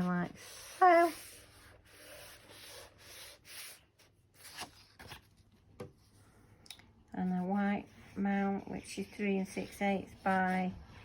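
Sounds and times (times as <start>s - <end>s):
hand rubbing card stock: 8.2s - 11.0s.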